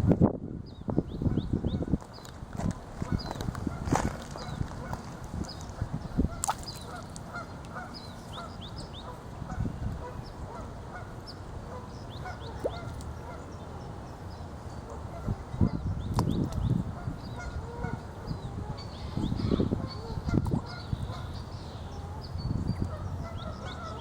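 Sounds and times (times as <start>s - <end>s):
geese honking: 6.3s - 13.5s, 22.9s - 24.0s.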